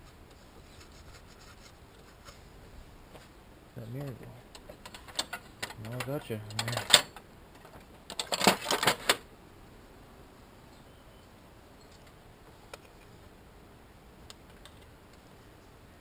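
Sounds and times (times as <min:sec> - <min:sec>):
metal tools clattering: 0:04.7 - 0:07.2.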